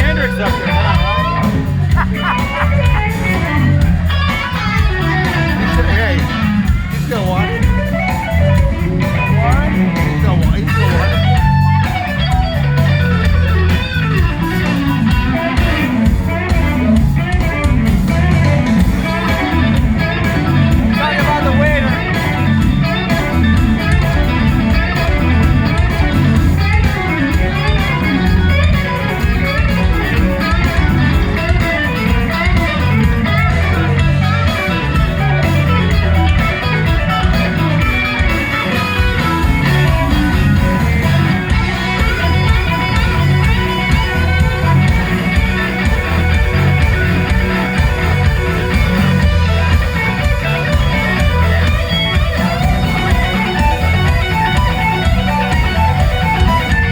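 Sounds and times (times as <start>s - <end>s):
electric guitar lead bending notes: 0.0s - 56.9s
live blues band playing: 0.0s - 56.9s.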